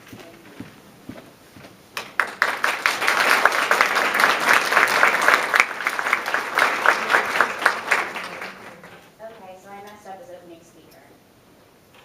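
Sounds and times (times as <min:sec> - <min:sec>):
sharp close claps: 0:02.0 - 0:09.0
audience applauding: 0:02.0 - 0:09.1.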